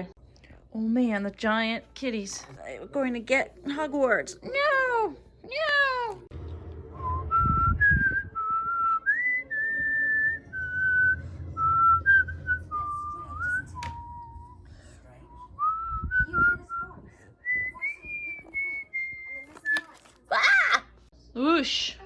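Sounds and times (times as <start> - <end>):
person whistling a slow tune: 6.9 - 14.7.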